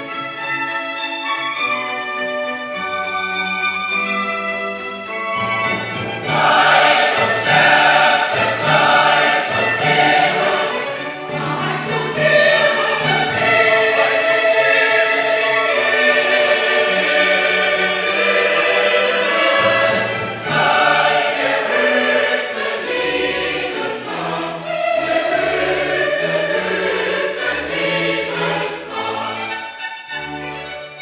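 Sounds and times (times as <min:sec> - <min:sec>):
instrumental accompaniment: 0:00.0 - 0:31.0
choir singing held chords: 0:06.1 - 0:29.8.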